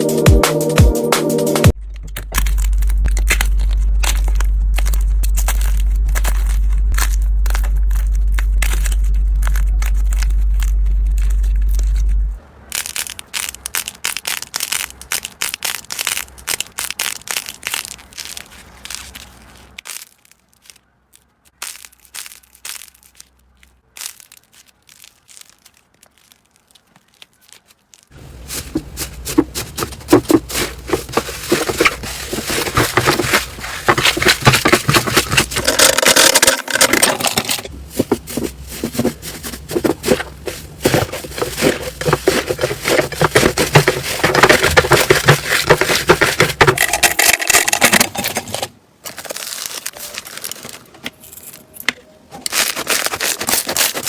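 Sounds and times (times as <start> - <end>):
slime squeezed and kneaded by hand: 12.7 - 33.8.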